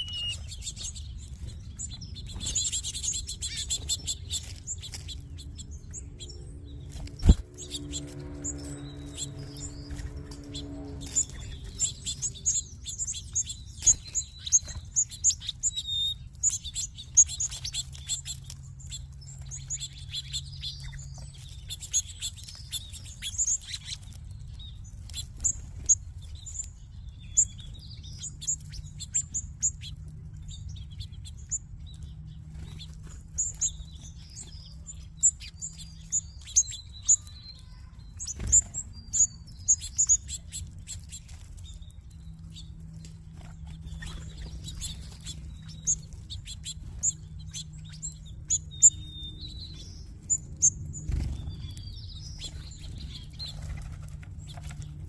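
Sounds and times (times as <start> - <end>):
small birds chirping and twittering: 0.0 - 55.0
wing flutters: 6.8 - 12.6.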